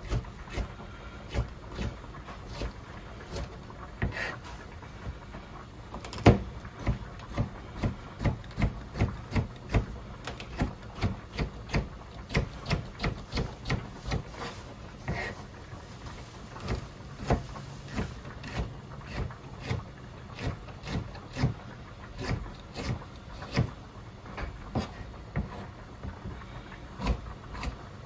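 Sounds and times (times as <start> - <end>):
knife chopping on cutting board: 0.0 - 4.4, 6.2 - 15.4, 16.6 - 19.8, 20.4 - 21.6, 22.2 - 23.8, 24.4 - 26.4, 27.0 - 27.8.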